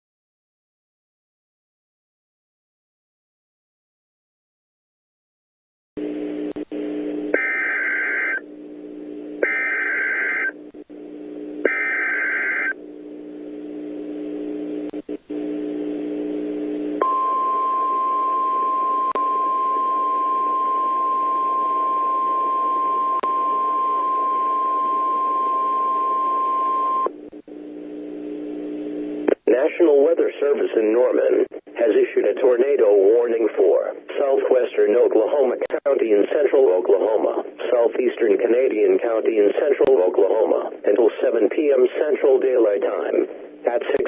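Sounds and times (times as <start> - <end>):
steady attention tone: 6.0 - 29.3
low steady hum: 6.0 - 44.0
data tone bursts: 7.4 - 8.4, 9.4 - 10.6, 11.6 - 12.8.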